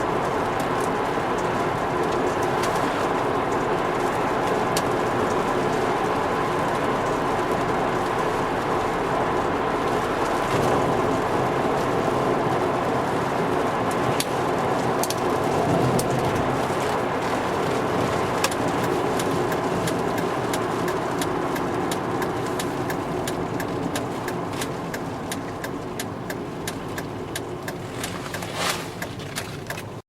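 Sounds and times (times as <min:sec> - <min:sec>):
car engine running: 0:00.0 - 0:30.0
road noise: 0:00.0 - 0:30.0
sharp ticks: 0:18.4 - 0:29.9.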